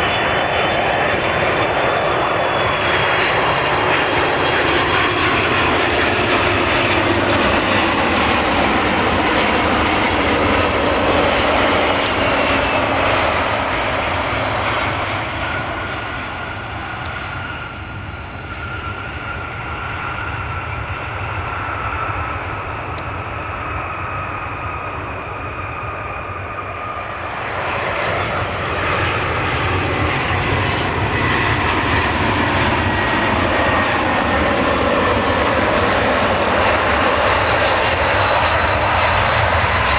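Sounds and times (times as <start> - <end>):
jet engines roaring with whine: 0.0 - 39.9.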